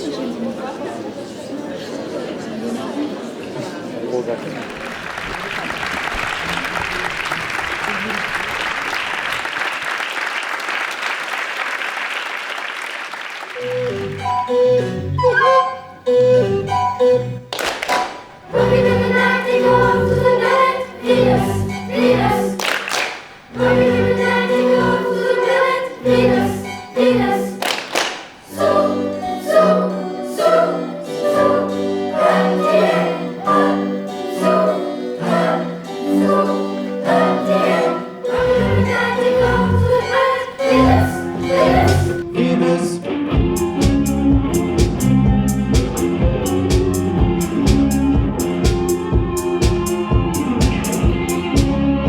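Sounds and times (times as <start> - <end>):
group of voices singing: 18.5 - 22.9, 23.5 - 43.9
stepping bass notes: 43.3 - 52.0.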